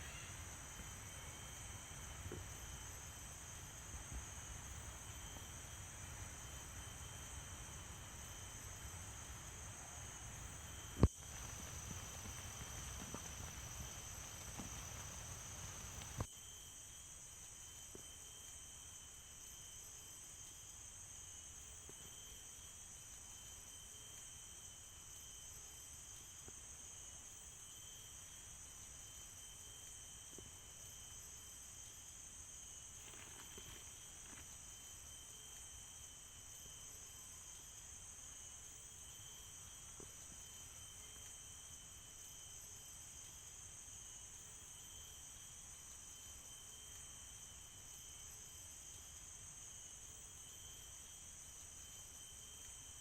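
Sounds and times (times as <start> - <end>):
insects trilling: 0.0 - 18.1, 18.8 - 53.0.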